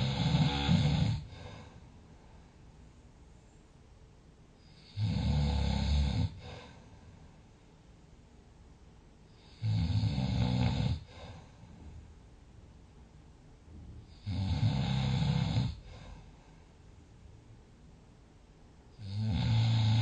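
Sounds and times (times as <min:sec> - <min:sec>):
person snoring: 0:00.0 - 0:01.8, 0:04.6 - 0:06.8, 0:09.4 - 0:11.4, 0:14.1 - 0:16.2, 0:19.0 - 0:20.0
faint breath: 0:00.8 - 0:03.8, 0:06.4 - 0:08.0, 0:11.0 - 0:12.2, 0:15.7 - 0:17.0.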